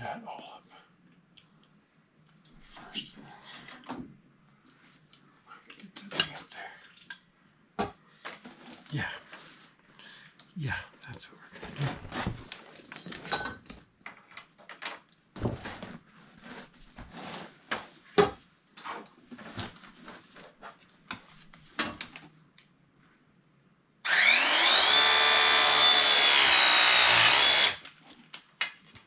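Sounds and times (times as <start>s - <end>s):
power tool motor whine: 24.0s - 27.8s.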